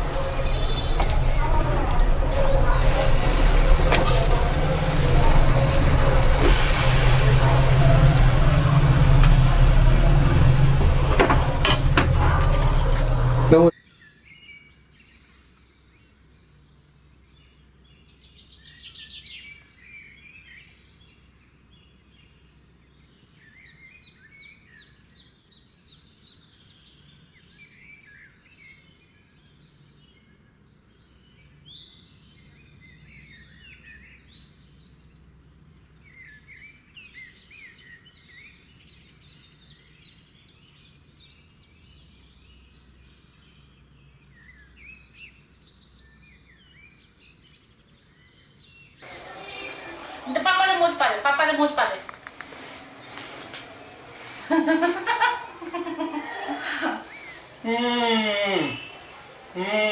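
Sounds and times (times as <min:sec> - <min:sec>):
birds chirping and trilling: 0:00.0 - 0:59.9.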